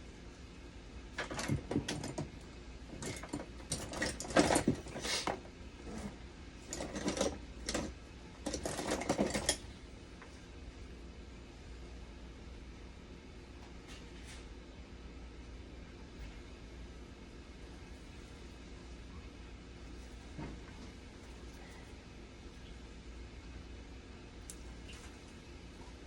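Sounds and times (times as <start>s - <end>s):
small parts clicking and clattering: 6.7s - 9.6s.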